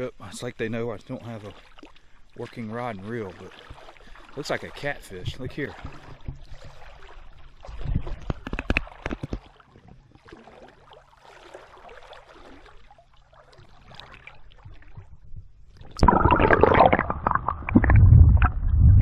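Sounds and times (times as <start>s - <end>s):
water sloshing and gurgling: 0.0s - 19.0s.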